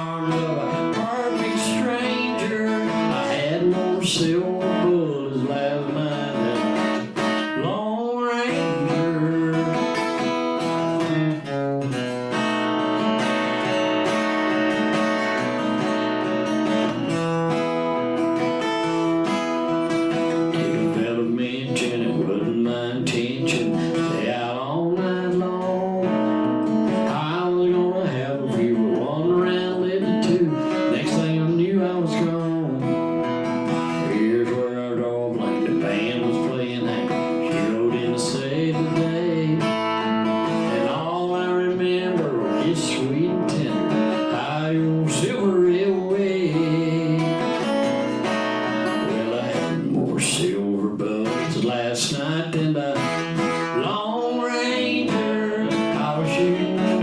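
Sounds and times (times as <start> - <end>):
acoustic guitar strummed and picked: 0.0 - 57.0.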